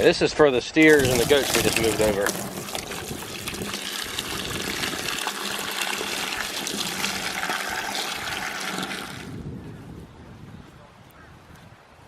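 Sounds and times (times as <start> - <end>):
water pouring into a container: 0.9 - 9.3.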